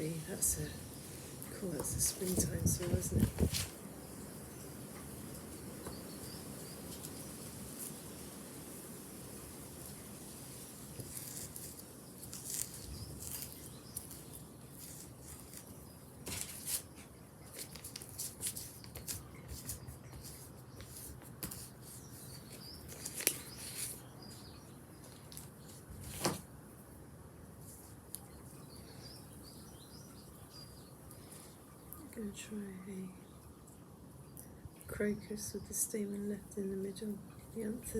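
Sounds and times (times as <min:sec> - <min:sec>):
paper and plants rustling: 0:00.0 - 0:04.2, 0:04.8 - 0:26.5, 0:27.6 - 0:28.7
birds chirping: 0:28.2 - 0:34.7.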